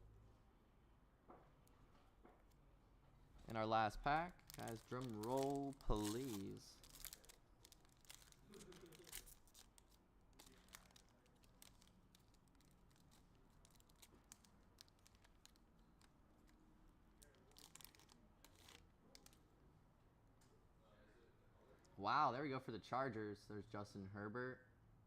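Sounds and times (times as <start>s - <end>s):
foil wrapper crinkling and tearing: 3.7s - 16.6s, 17.2s - 19.4s
cards handled with scratchy clicks: 4.4s - 16.6s, 17.2s - 19.4s.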